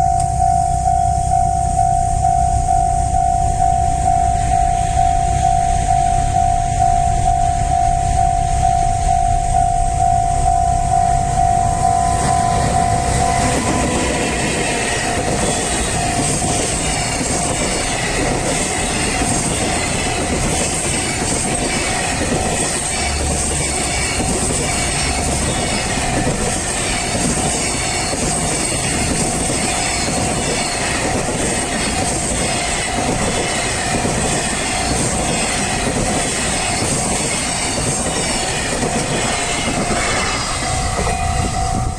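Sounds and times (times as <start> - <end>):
level crossing alarm ringing: 0.0 - 41.9
train wheels clattering: 12.0 - 41.9.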